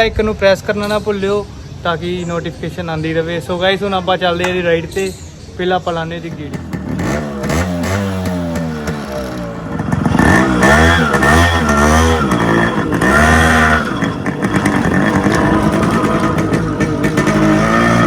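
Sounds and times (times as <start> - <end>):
motorcycle engine revving: 6.0 - 18.0.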